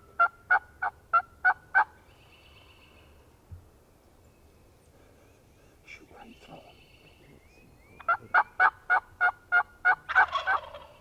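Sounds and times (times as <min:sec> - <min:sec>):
turkey yelping: 0:00.2 - 0:01.9, 0:08.0 - 0:11.0.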